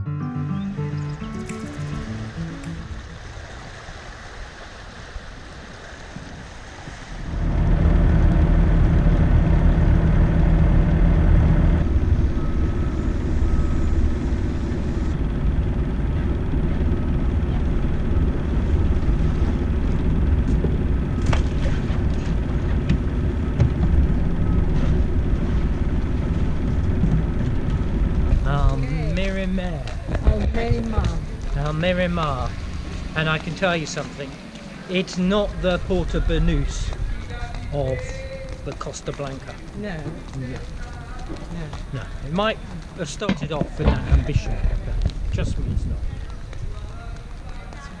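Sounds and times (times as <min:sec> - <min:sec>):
engine running steadily: 0:07.2 - 0:48.0
wind buffeting microphone: 0:11.8 - 0:33.6, 0:34.4 - 0:48.0.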